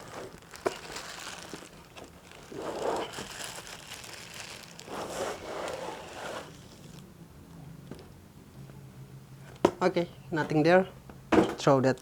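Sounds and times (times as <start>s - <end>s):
packaging rustling and crinkling: 0.0s - 7.0s.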